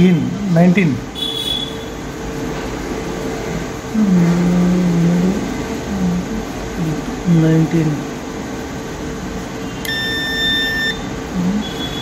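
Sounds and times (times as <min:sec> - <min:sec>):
air conditioning hum: 0:00.0 - 0:12.0
man humming: 0:03.9 - 0:08.0, 0:11.2 - 0:11.9.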